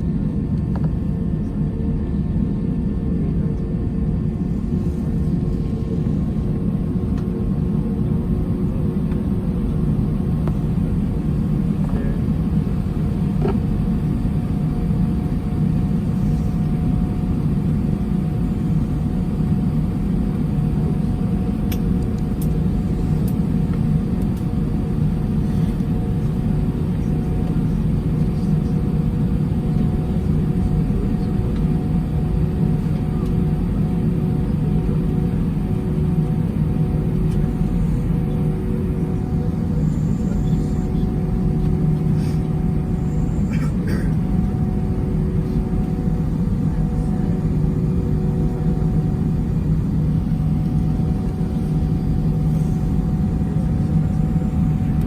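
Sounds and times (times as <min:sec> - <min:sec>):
airplane cabin engine rumble: 0:00.0 - 0:55.0.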